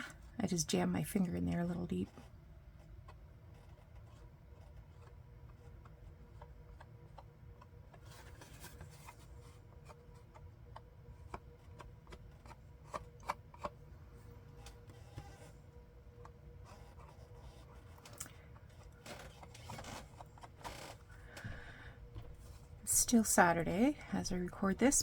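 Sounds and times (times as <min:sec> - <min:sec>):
low steady hum: 0:00.0 - 0:25.0
paper handling clicks and taps: 0:03.1 - 0:13.8.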